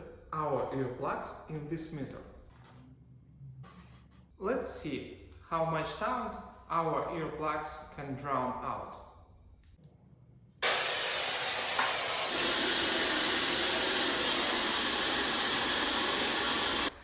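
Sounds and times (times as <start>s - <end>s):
white noise hiss: 10.6s - 17.0s.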